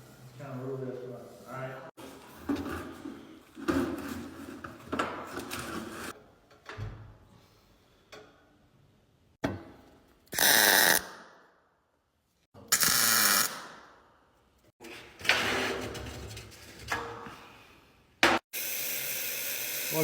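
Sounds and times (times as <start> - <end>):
laser welder hissing: 12.7 - 13.6, 18.6 - 20.0.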